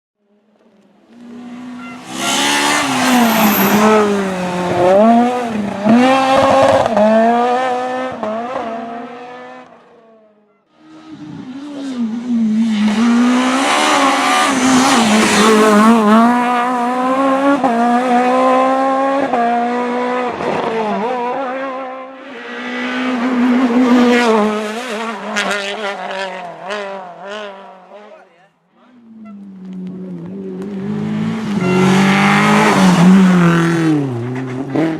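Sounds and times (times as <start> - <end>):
rally car engines revving: 0.6 - 34.9.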